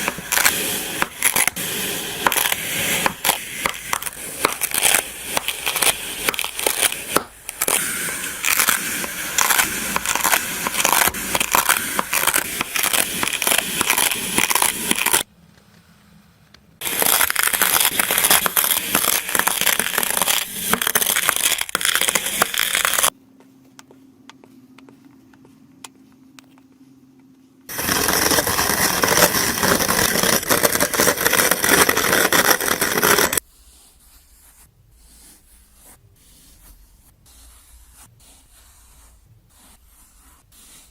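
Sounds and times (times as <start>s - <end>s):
sand crackling as it is crushed: 0.0s - 15.3s, 16.8s - 23.1s, 27.7s - 33.4s.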